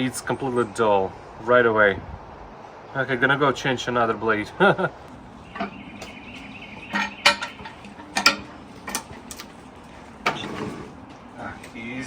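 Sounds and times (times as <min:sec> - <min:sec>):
metal clinks and knocks: 0:05.5 - 0:09.6.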